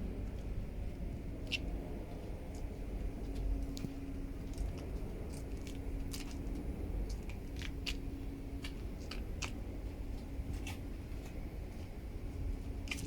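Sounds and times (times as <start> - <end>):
faint hum: 0.0 - 13.0
low mechanical rumble: 0.0 - 13.0.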